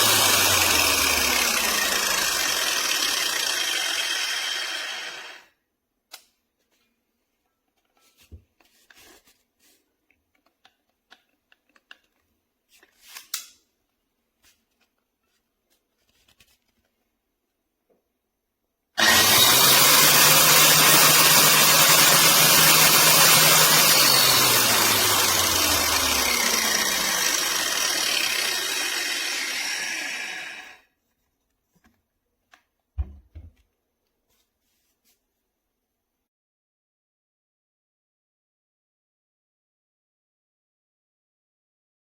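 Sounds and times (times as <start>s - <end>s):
angle grinder grinding: 0.0s - 5.5s, 19.0s - 30.8s.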